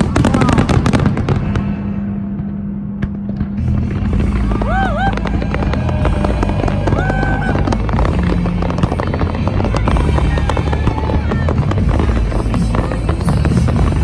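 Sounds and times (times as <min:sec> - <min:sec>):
fireworks bursting and crackling: 0:00.0 - 0:14.0
loud music with bass: 0:03.7 - 0:14.0.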